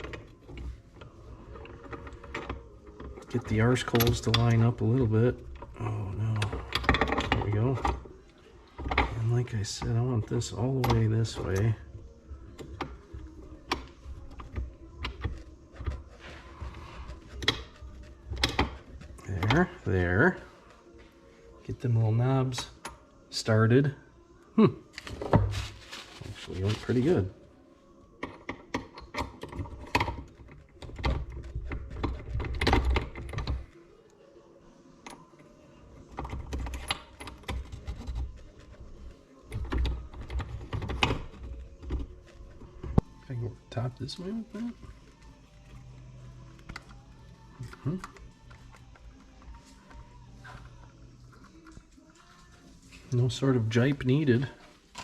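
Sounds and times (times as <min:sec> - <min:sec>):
metal parts clicking and knocking: 0:00.0 - 0:19.8, 0:28.2 - 0:33.7.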